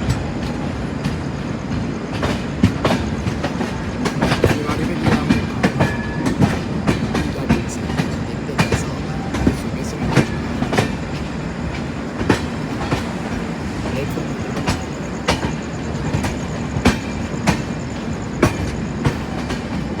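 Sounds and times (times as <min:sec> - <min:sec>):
train rumbling on rails: 0:00.0 - 0:20.0
wheels clacking over rail joints: 0:00.0 - 0:20.0.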